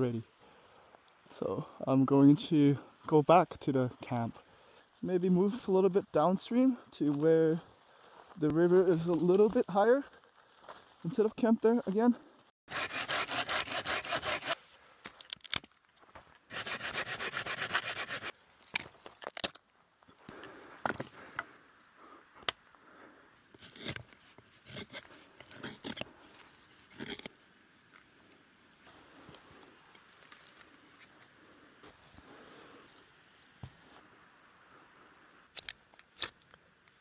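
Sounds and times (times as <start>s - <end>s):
hand saw cutting wood: 12.7s - 14.6s, 16.5s - 18.3s, 23.6s - 26.1s.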